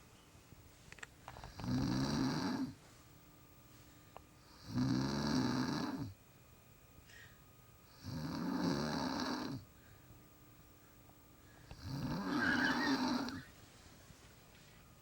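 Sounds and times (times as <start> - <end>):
woman snoring: 1.5 - 2.8, 4.5 - 6.2, 7.9 - 9.6, 11.7 - 13.5.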